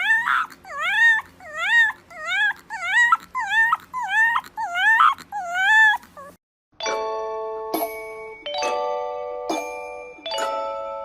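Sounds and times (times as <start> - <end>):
young animal whimpering: 0.0 - 6.4
bell-like chime: 6.8 - 11.0.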